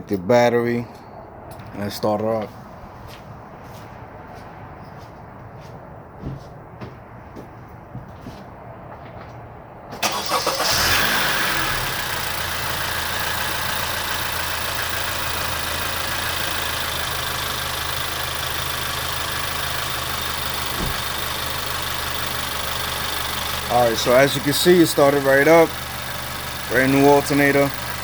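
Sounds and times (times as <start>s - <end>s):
car engine revving and idling: 10.0s - 28.0s
engine cranking on starter: 10.0s - 28.0s.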